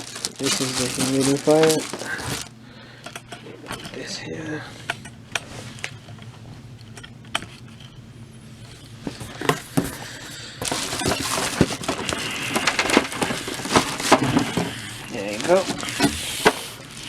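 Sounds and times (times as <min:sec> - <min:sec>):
packaging rustling: 0:00.0 - 0:02.6, 0:09.0 - 0:17.0
hard plastic parts clicking: 0:10.6 - 0:16.7.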